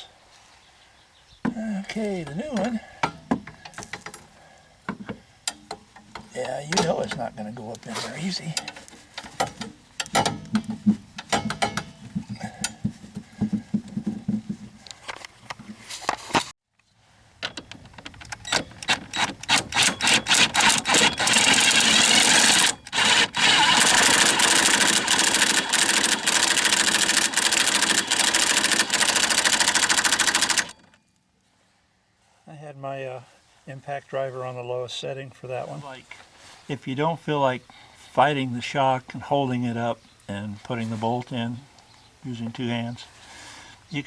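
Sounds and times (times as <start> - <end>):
metal clanks and knocks: 2.6 - 4.3, 4.9 - 7.4, 8.5 - 14.9.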